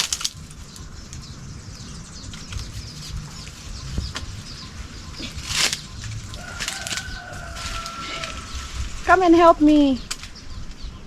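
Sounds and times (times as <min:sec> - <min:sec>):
leafy branches rustling: 0:00.0 - 0:10.8
swish of leaves: 0:05.2 - 0:09.2.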